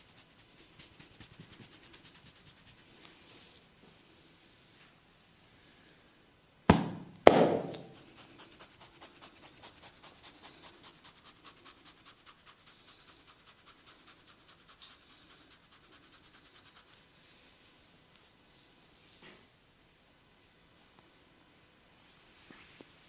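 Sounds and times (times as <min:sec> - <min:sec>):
hand slaps: 0:06.7 - 0:08.0.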